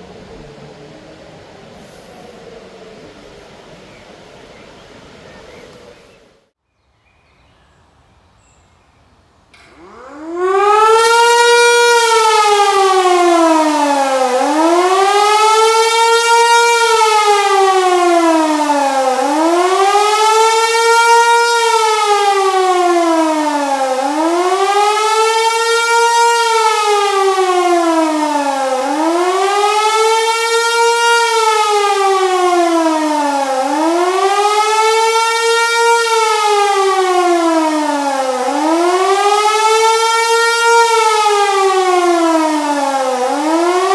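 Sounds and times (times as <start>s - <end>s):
siren wailing: 9.6s - 43.9s.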